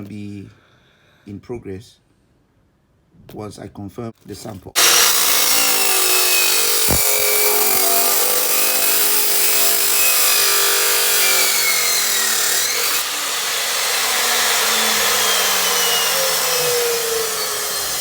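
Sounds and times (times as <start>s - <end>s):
power tool cutting into shoe: 4.8s - 18.0s.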